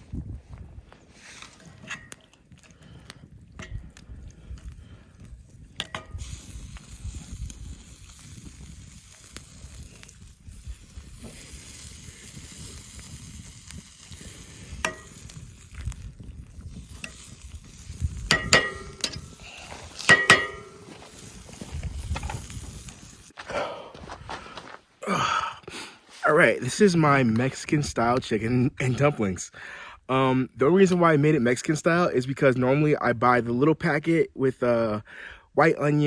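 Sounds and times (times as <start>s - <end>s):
food sizzling and bubbling in pot: 1.7s - 23.4s
sharp metallic clinks: 18.3s - 21.6s.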